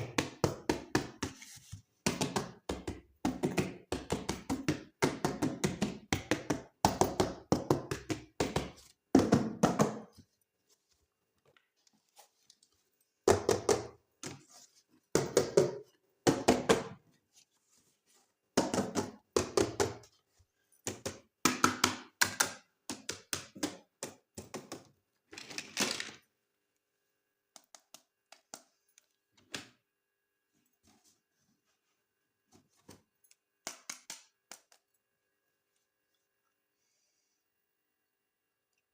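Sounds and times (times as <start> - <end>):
hard plastic pieces clacking: 25.2 - 26.2.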